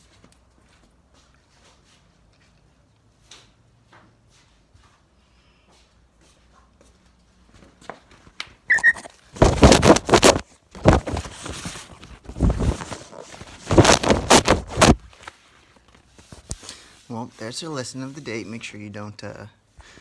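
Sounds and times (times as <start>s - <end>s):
rubbing on phone microphone: 8.7s - 18.8s.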